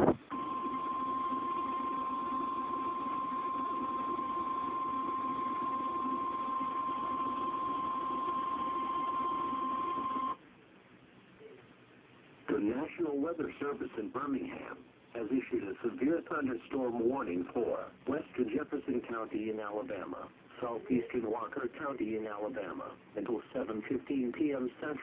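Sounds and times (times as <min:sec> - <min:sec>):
steady warning alarm tone: 0:00.3 - 0:10.4
radio hiss: 0:12.4 - 0:25.0.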